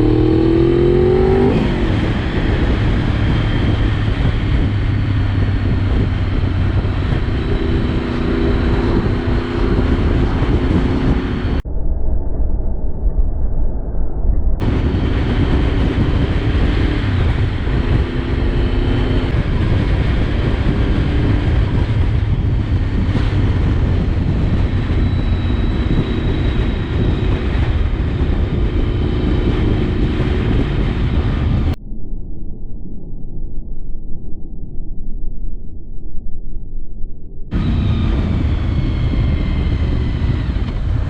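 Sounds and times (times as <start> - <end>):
motorcycle engine running: 0.0 - 11.6, 14.6 - 31.8, 37.5 - 41.0
wind buffeting a helmet camera: 0.0 - 12.1, 14.6 - 31.8, 37.5 - 41.0.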